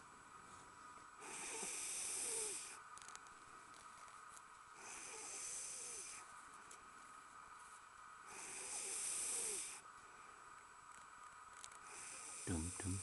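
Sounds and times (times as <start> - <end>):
man snoring: 1.2 - 2.8, 4.8 - 6.2, 8.3 - 9.8, 11.9 - 13.0.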